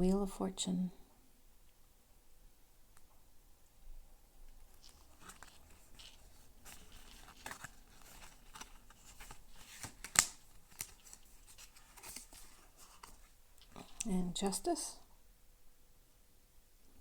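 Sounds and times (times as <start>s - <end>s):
cards sliding and rustling: 4.7s - 14.1s
light clicks of cards: 4.8s - 14.2s
card snap: 9.2s - 11.2s.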